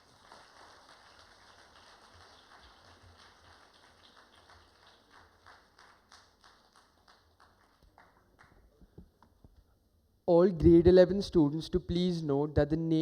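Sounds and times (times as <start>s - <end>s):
audience applauding: 0.0s - 8.7s.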